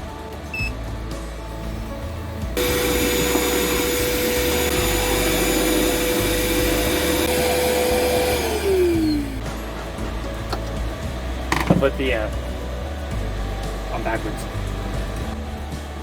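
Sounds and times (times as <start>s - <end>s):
vacuum cleaner running: 1.5s - 12.4s.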